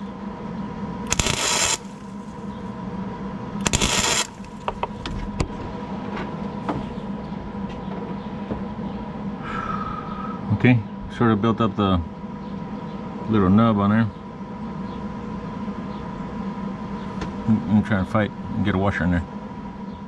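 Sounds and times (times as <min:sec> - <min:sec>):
steady hum: 0:00.0 - 0:07.6
welding arc crackling: 0:01.1 - 0:02.5, 0:03.6 - 0:04.9.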